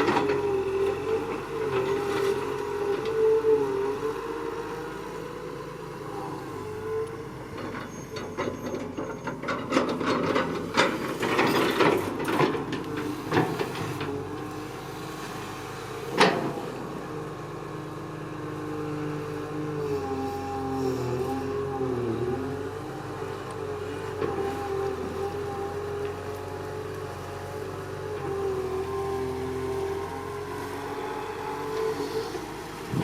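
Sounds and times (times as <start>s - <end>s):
excavator engine running: 0.0s - 33.0s.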